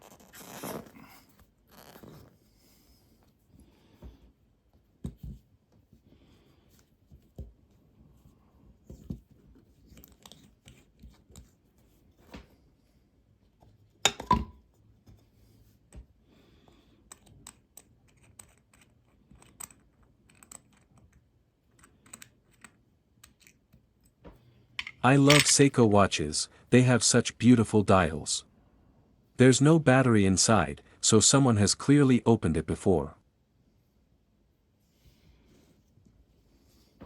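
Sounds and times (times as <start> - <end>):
watch tools clicking and scraping: 24.8 - 25.6.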